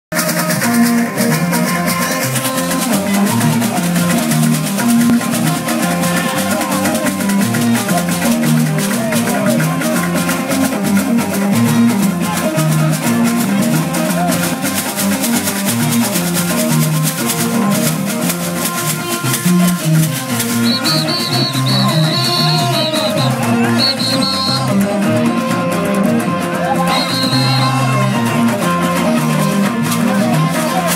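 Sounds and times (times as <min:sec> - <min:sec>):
plucked strings: 0:00.1 - 0:30.9
rattling percussion: 0:00.1 - 0:30.9
bass line: 0:15.6 - 0:25.5, 0:26.1 - 0:30.5.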